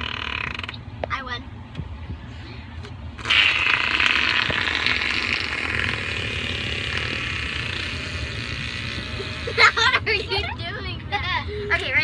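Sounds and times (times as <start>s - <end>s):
buzzing fart noise: 0.0s - 0.9s, 3.2s - 10.4s
low rumble: 0.0s - 11.2s.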